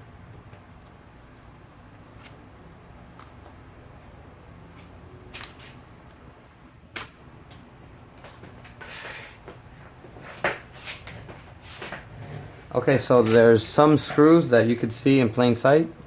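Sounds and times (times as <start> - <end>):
low steady hum: 0.0 - 8.8.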